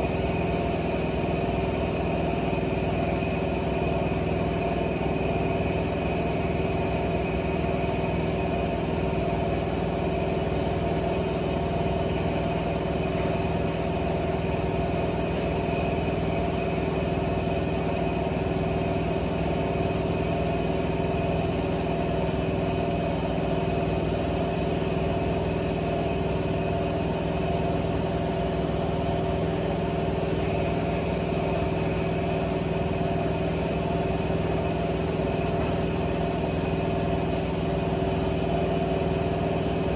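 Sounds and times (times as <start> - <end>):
washing machine motor hum and whine: 0.0 - 39.9.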